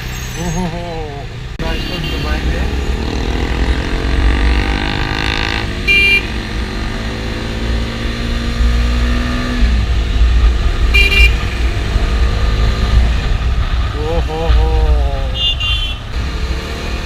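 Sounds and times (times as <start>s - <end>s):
vehicle horn toots: 1.6s - 2.4s, 5.8s - 6.5s, 10.9s - 11.7s, 15.4s - 16.0s
motorcycle engine accelerating: 2.4s - 15.2s.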